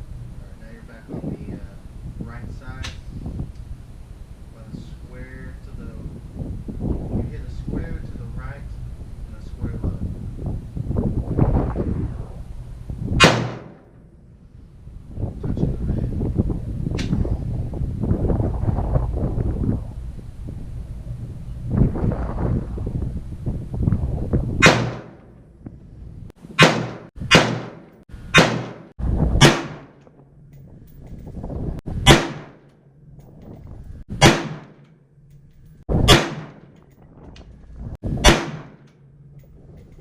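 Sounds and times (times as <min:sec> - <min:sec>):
rifle shots: 0:13.2 - 0:14.0, 0:24.6 - 0:25.3, 0:26.5 - 0:30.0, 0:32.0 - 0:32.7, 0:34.2 - 0:34.9, 0:36.0 - 0:36.8, 0:38.2 - 0:38.9.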